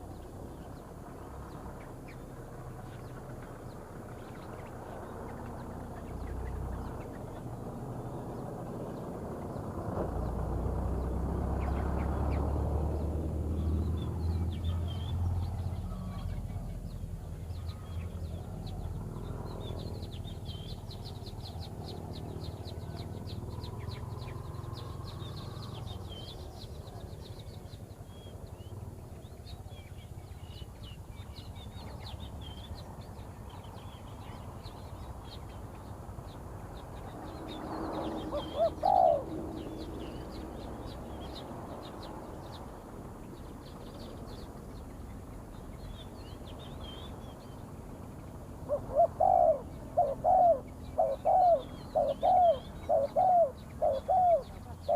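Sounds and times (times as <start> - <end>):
small birds chirping: 0.0 - 54.9
dove cooing: 38.1 - 40.0, 48.6 - 54.9.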